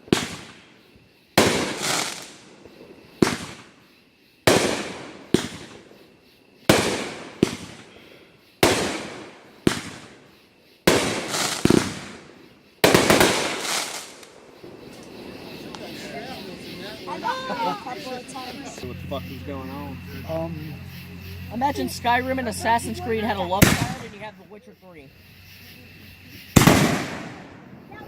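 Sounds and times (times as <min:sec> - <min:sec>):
fireworks bangs with rumbling echo: 0:00.0 - 0:00.8, 0:01.4 - 0:03.8, 0:04.4 - 0:06.0, 0:06.6 - 0:08.0, 0:08.6 - 0:16.7, 0:23.6 - 0:24.2, 0:26.5 - 0:28.0
fireworks crackling: 0:00.0 - 0:28.0.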